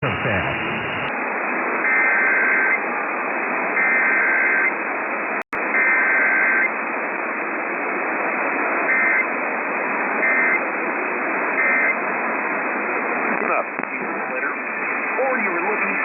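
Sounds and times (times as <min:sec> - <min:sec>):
hissing radio static: 0:00.0 - 0:03.0, 0:08.1 - 0:16.0.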